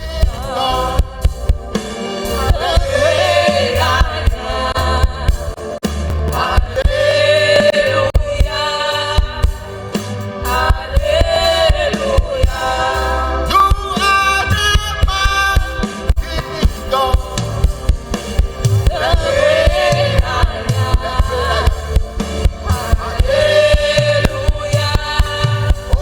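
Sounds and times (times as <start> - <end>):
band with steady drum beat: 0.0 - 26.0
voices singing long notes: 0.0 - 26.0.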